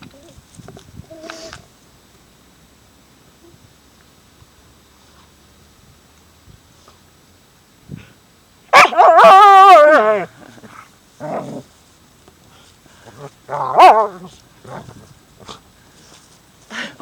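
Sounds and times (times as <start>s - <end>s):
dog barking: 8.7s - 9.9s.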